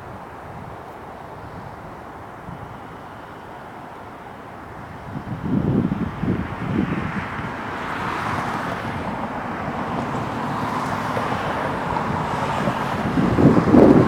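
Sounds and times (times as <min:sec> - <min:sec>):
jet engines roaring: 0:00.0 - 0:14.0.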